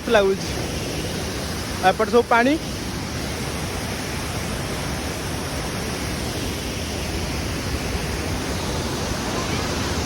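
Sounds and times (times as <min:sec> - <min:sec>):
waterfall rushing: 0:00.0 - 0:10.0.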